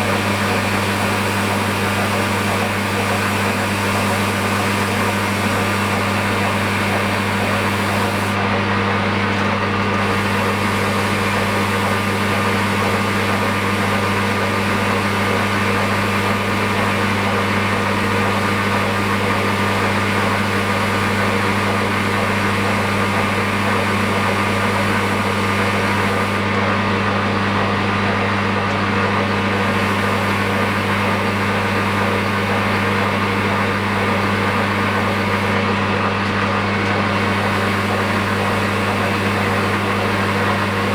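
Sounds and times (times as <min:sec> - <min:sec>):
lathe motor hum: 0:00.0 - 0:40.9
grinding hiss: 0:04.3 - 0:08.4.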